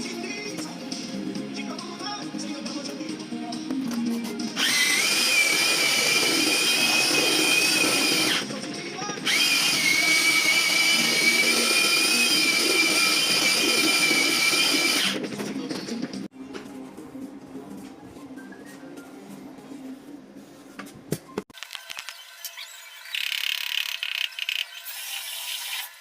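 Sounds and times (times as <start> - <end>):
power tool motor whining: 4.6 - 8.4, 9.2 - 15.2.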